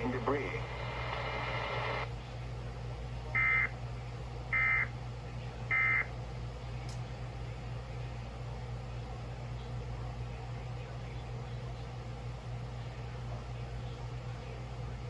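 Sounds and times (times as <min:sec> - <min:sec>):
radio hiss: 0:00.0 - 0:02.1
steady electrical hum: 0:00.0 - 0:15.0.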